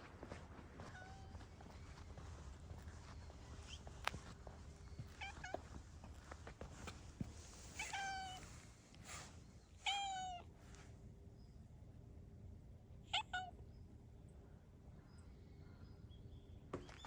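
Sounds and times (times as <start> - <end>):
cat meowing: 5.2 - 5.6, 7.8 - 8.5, 9.8 - 10.4, 13.1 - 13.5.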